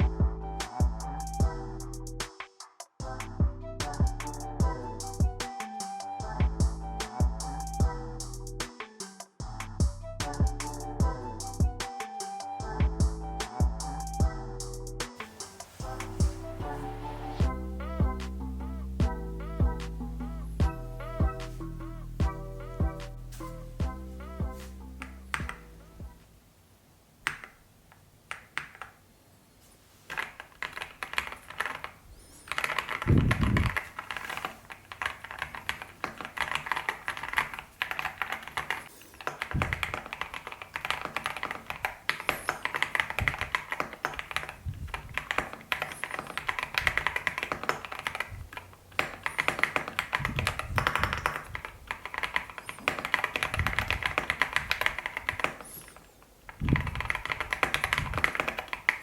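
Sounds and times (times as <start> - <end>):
typing on mechanical keyboard: 30.1 - 59.0.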